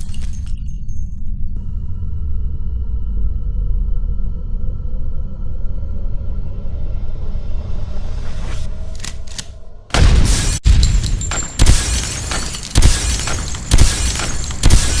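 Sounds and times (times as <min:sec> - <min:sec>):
low rumble: 0:00.0 - 0:09.4
big gun shots with debris: 0:09.9 - 0:15.0.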